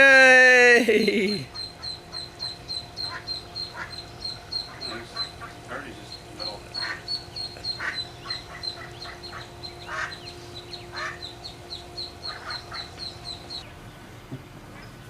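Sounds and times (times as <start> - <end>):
ducklings peeping: 1.3 - 15.0
duck quacking: 1.5 - 10.3, 10.9 - 13.4.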